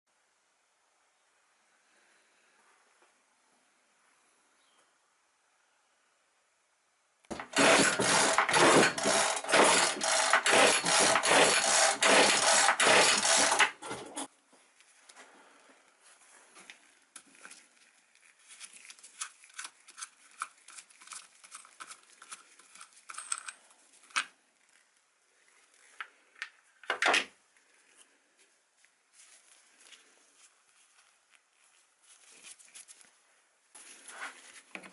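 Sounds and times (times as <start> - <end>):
loud mechanical clattering: 7.3 - 13.9.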